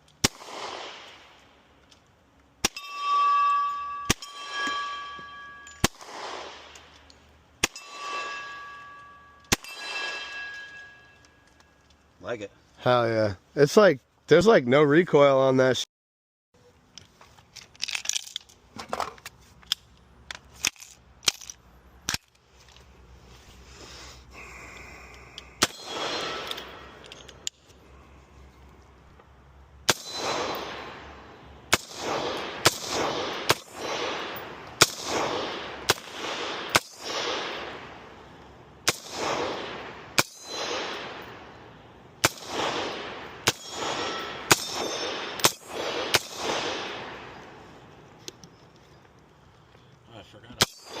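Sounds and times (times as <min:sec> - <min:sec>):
gunshots with rolling echo: 0:00.2 - 0:01.4, 0:04.0 - 0:06.8, 0:09.5 - 0:11.0, 0:25.6 - 0:27.1, 0:29.8 - 0:47.7.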